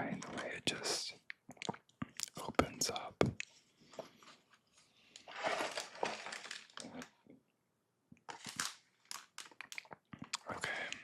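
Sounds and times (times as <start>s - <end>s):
cardboard and plastic bags crinkling: 4.6s - 7.1s, 8.3s - 9.9s.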